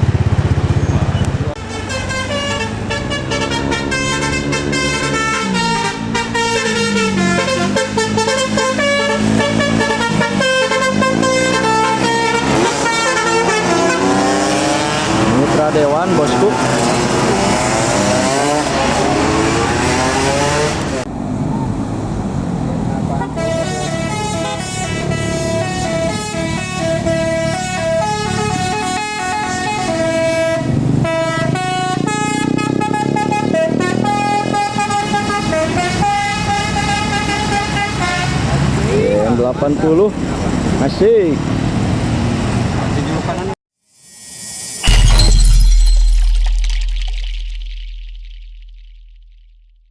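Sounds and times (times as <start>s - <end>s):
bus horn playing a melody: 1.6s - 15.2s, 23.2s - 38.8s
bus engine rumble: 21.0s - 28.0s.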